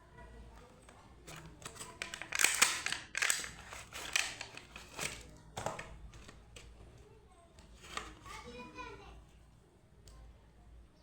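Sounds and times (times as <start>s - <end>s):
packaging crinkling: 1.2s - 6.8s.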